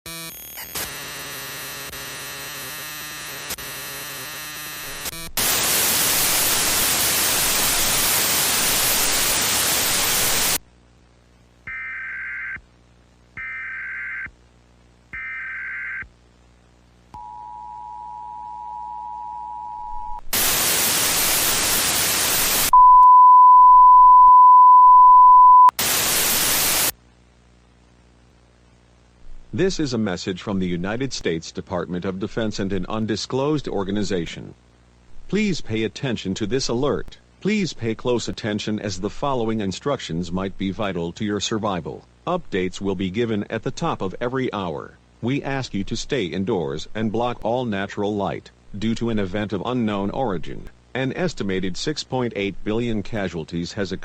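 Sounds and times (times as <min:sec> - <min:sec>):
loud tv static: 0:00.1 - 0:11.7, 0:20.2 - 0:22.8, 0:25.5 - 0:33.0
distorted buzzing: 0:00.1 - 0:17.4, 0:19.3 - 0:29.8
loud steady single tone: 0:17.2 - 0:21.7, 0:22.3 - 0:26.9
two-tone attention signal: 0:22.8 - 0:25.7.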